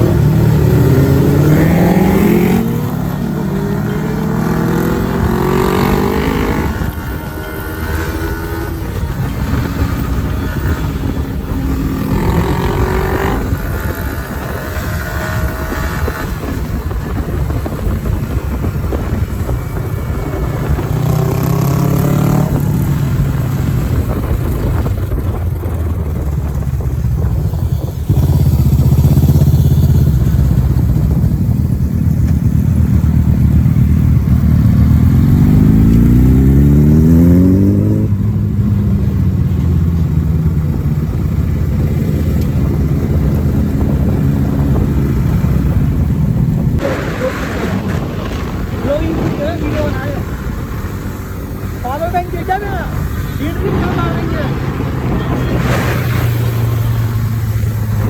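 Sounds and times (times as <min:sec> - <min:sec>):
motorcycle engine revving: 0:00.0 - 0:58.0
riding noise rush: 0:40.9 - 0:58.0.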